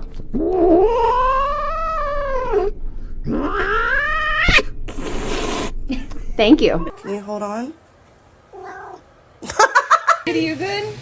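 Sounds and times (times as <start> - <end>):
cat yowling: 0.6 - 2.7, 3.3 - 4.7, 6.8 - 9.2.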